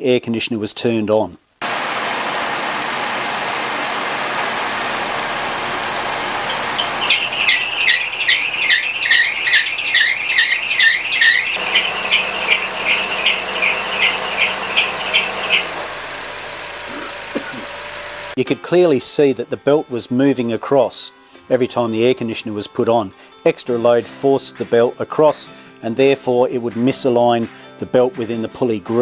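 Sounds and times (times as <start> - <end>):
car engine running: 1.6 - 18.4
belt squealing: 6.3 - 15.9.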